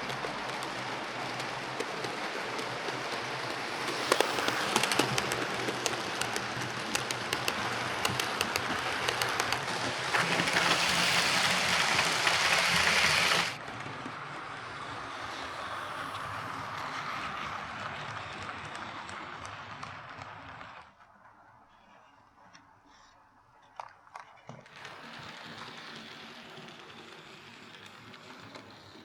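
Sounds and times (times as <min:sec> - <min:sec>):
model train motor rattling: 0:00.0 - 0:13.6, 0:24.7 - 0:29.0
sharp clicks: 0:02.4 - 0:13.6.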